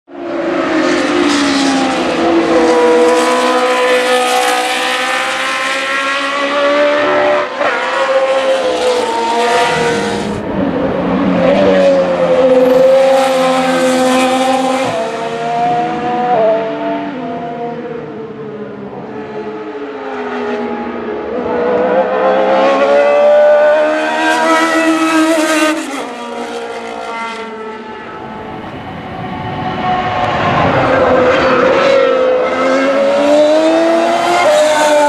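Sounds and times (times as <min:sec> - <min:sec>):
racing car engine at high revs: 0:00.1 - 0:35.0.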